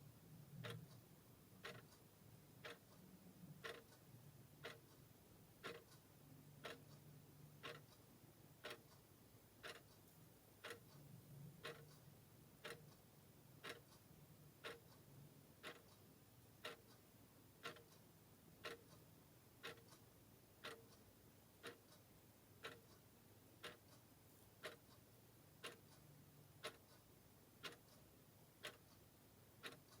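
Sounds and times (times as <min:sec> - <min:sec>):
clock ticking: 0:00.3 - 0:30.0.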